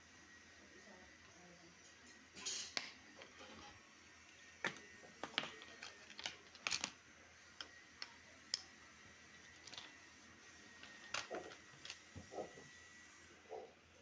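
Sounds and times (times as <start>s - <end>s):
small tools clicking and tapping: 4.6s - 7.0s, 7.6s - 8.7s, 9.4s - 10.0s, 10.8s - 12.4s.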